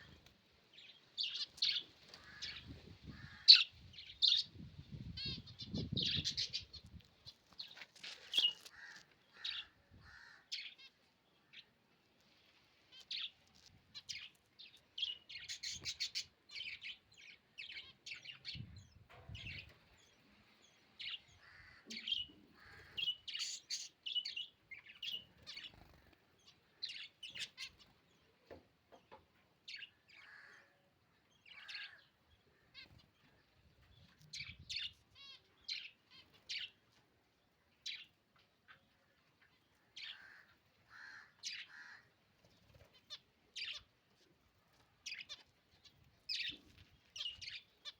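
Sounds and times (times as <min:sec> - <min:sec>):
lovebirds chirping: 0:00.0 - 0:47.9.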